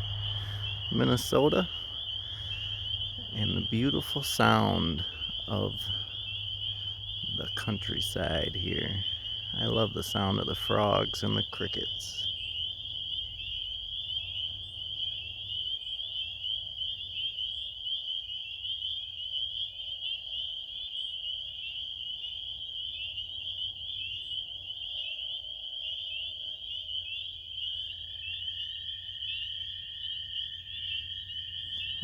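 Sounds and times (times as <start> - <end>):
low rumble: 0.0 - 4.4
lower steady trill: 0.0 - 15.8
frogs trilling: 0.0 - 32.0.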